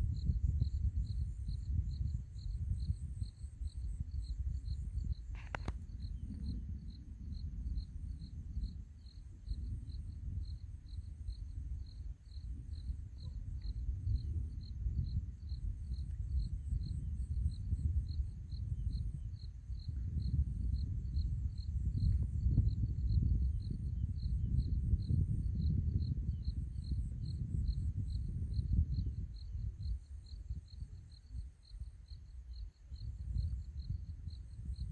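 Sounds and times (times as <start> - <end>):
wind gusting with low rumble: 0.0 - 34.9.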